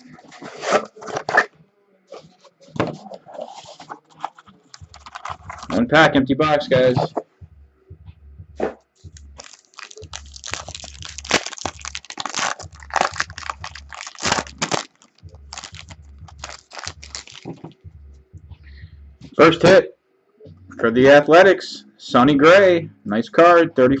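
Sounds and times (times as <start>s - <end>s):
wrapper crinkling and tearing: 4.3s - 5.8s, 9.2s - 17.7s.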